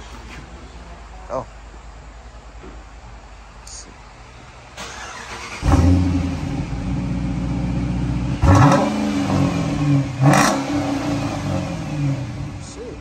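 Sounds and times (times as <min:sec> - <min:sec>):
car engine starting and idling: 0:04.3 - 0:13.0
engine revving: 0:04.8 - 0:13.0.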